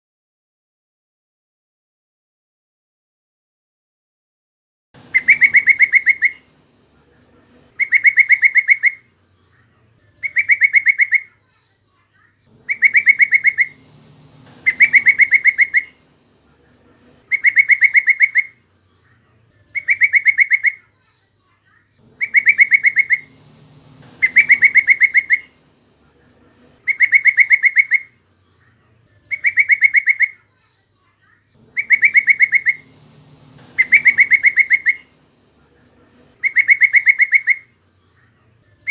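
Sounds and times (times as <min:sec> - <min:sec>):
bird chattering call: 0:05.0 - 0:11.4, 0:12.5 - 0:20.9, 0:22.0 - 0:30.5, 0:31.6 - 0:38.3.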